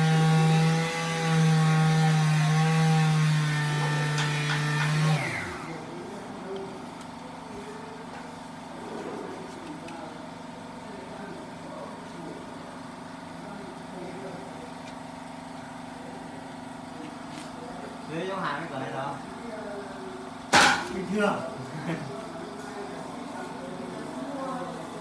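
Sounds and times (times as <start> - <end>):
motor machine humming and winding down: 0.0 - 5.9
faint voices: 19.2 - 25.0.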